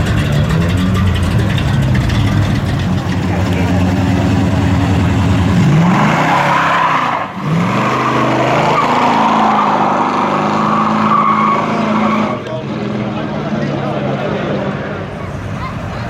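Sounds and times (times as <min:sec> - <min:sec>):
tyres squealing: 0:00.0 - 0:12.5
muscle car engine revving: 0:00.0 - 0:16.0.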